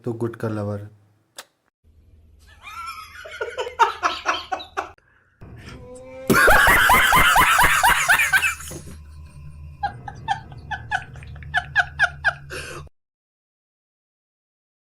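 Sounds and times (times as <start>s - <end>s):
person laughing heartily: 2.4s - 5.0s, 6.3s - 12.9s.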